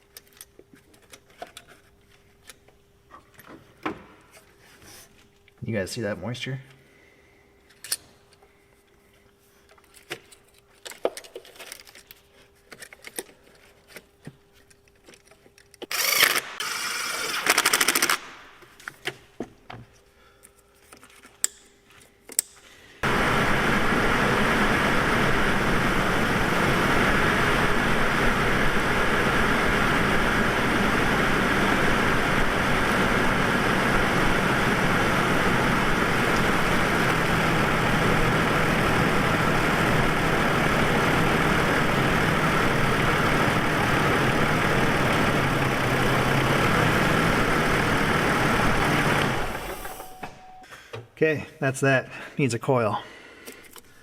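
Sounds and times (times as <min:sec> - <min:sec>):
misfiring car engine idling: 0:23.0 - 0:49.9.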